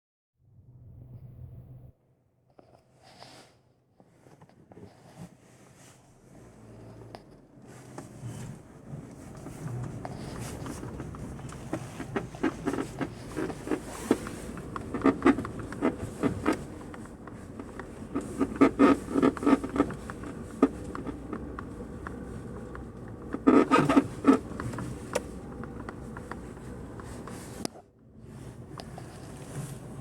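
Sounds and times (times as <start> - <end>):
car suspension squeaking: 8.0 - 27.7.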